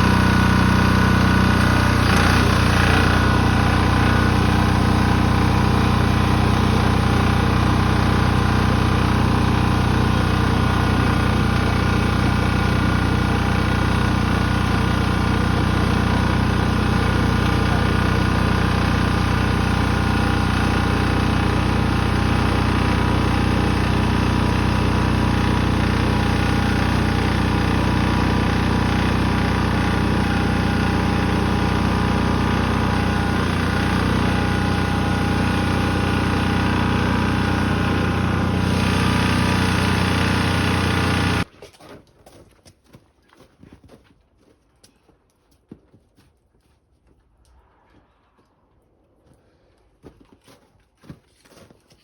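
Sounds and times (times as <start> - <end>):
snow blower engine running: 0.0 - 41.5.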